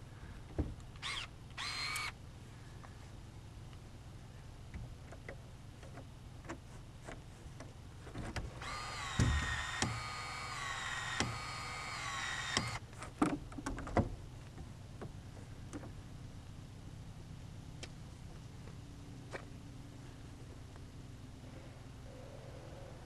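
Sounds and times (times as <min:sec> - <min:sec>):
power tool motor whine: 0:01.0 - 0:02.2, 0:08.6 - 0:12.8
sharp tool clicks: 0:08.6 - 0:12.8.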